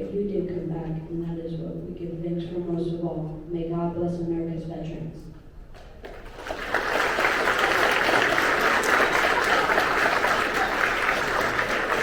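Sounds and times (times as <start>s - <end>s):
large audience applauding: 6.0s - 12.0s.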